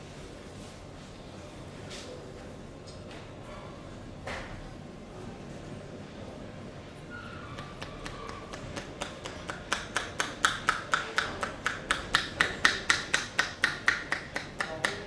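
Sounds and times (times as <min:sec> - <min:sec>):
rapid hand strikes massage: 0:07.6 - 0:15.0.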